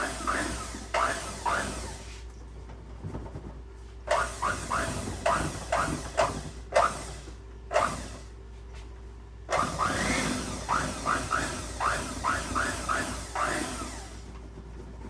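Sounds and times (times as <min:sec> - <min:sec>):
electric hand mixer beating: 0:00.0 - 0:02.2, 0:04.1 - 0:08.2, 0:09.5 - 0:14.6.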